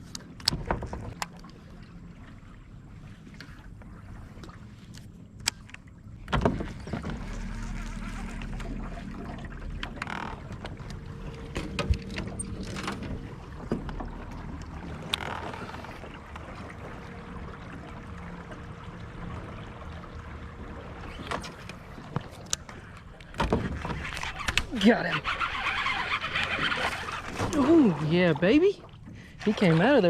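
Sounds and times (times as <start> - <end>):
wind and water rumble: 0.0 - 30.0
fishing tackle clicks and knocks: 4.9 - 7.3, 21.2 - 24.7
fishing rod swishing: 24.0 - 27.9.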